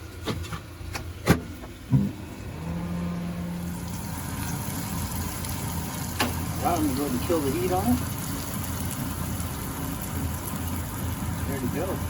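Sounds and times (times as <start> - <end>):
microwave oven humming: 0.0 - 12.0
thump: 1.3 - 2.2.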